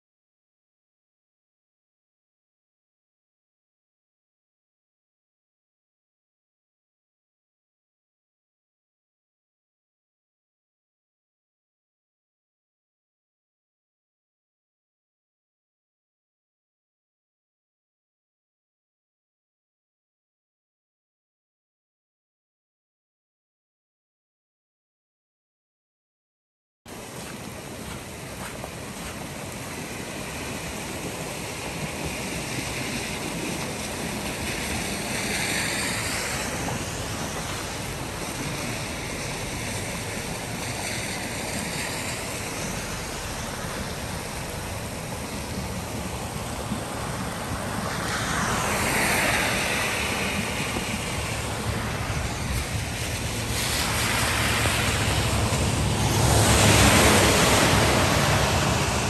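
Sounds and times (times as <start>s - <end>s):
floodwater rushing: 26.9s - 59.0s
wind noise on microphone: 26.9s - 59.0s.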